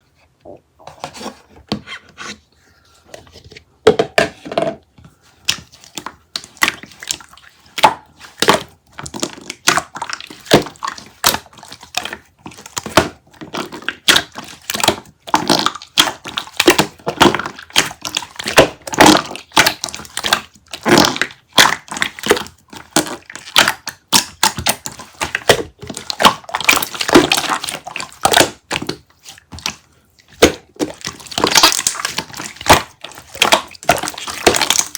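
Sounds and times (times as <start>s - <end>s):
crunching and crinkling: 5.2s - 34.9s.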